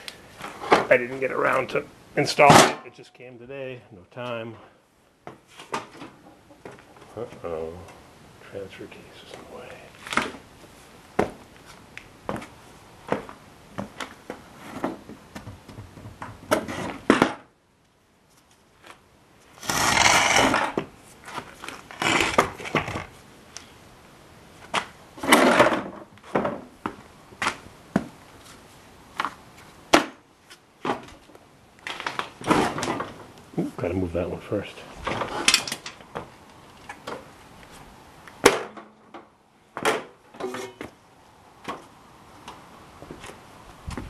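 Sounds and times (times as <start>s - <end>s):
metal scraping drags: 19.6s - 20.8s, 40.4s - 40.8s
metal parts clunking: 35.3s - 36.0s, 40.3s - 40.9s.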